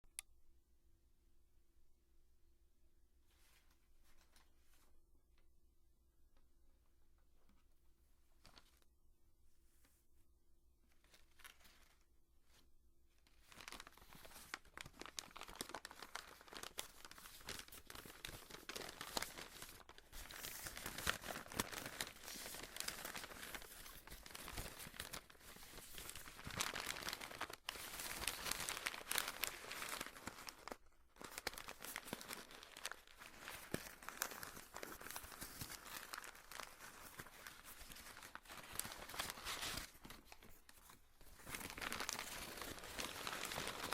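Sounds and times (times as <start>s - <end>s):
paper tearing and crumpling: 13.6s - 40.3s, 41.4s - 43.9s.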